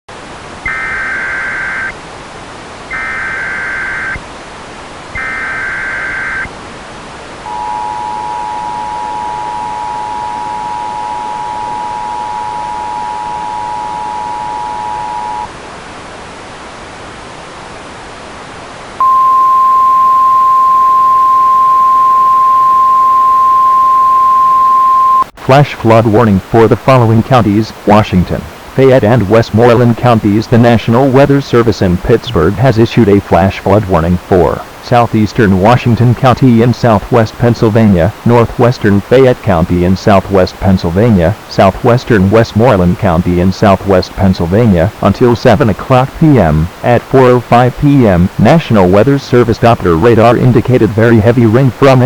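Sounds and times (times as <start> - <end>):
radio hiss: 0.5 - 15.6, 25.3 - 52.0
warbling data header bursts: 0.6 - 2.0, 2.9 - 4.2, 5.1 - 6.5, 7.5 - 15.5
single-pitch warning tone: 5.2 - 6.5, 7.4 - 15.5, 19.0 - 25.4
two-tone attention signal: 7.5 - 15.5, 19.0 - 25.3.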